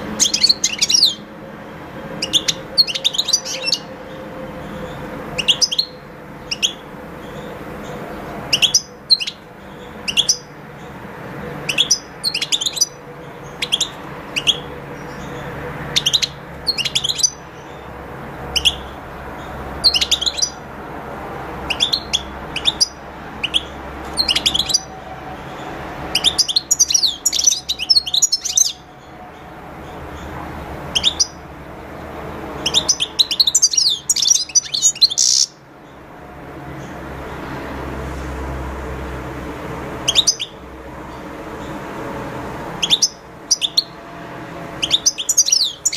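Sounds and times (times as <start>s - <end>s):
goldfinch chirping and twittering: 0.0s - 20.8s, 21.4s - 36.0s, 40.0s - 44.0s, 44.6s - 45.9s.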